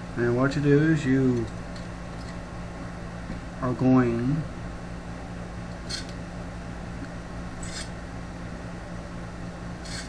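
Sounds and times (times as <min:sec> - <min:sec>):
steady low hum: 0:00.0 - 0:10.0
sharp metallic scrapes: 0:07.6 - 0:08.0.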